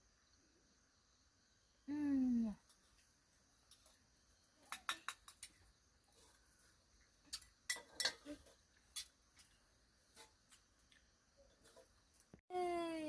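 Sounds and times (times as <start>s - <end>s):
utensils clinking against dishes: 7.7s - 8.4s.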